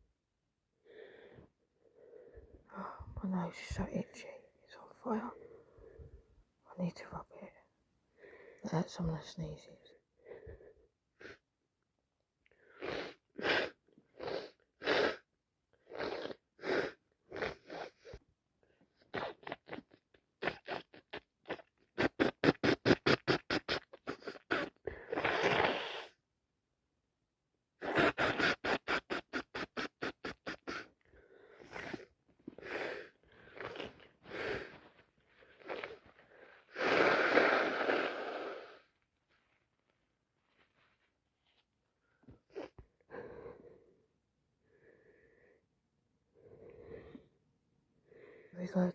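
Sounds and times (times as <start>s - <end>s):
person sniffing and snuffling: 12.7s - 18.2s, 19.0s - 26.2s, 27.8s - 39.4s, 42.4s - 43.7s.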